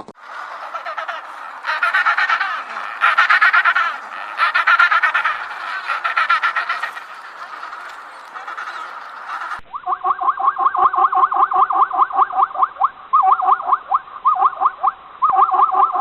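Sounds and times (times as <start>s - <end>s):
flock of birds squawking: 0.1s - 9.6s
repeating animal call: 0.2s - 12.6s.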